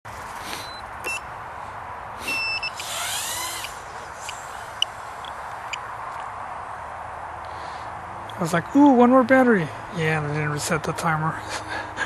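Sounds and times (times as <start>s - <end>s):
short electronic beeps: 0.6s - 1.3s, 2.3s - 2.9s.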